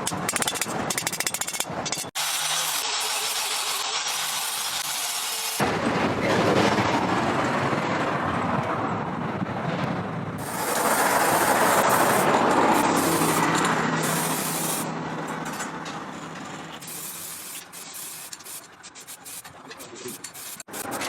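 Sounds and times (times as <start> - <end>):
abrasive sanding rasp: 16.8 - 21.0.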